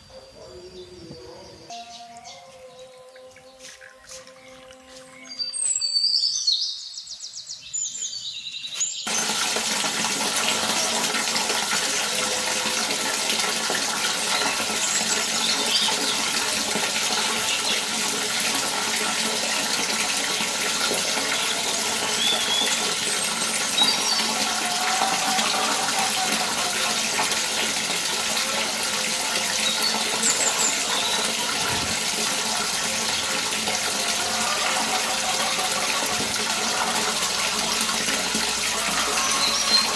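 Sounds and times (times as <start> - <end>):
water gushing: 9.1 - 39.9.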